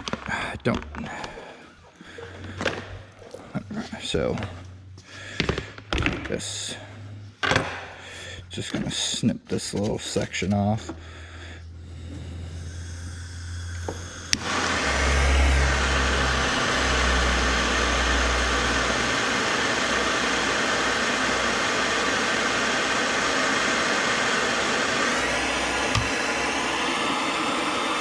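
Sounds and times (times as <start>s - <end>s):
motor running with hiss: 11.8s - 28.0s.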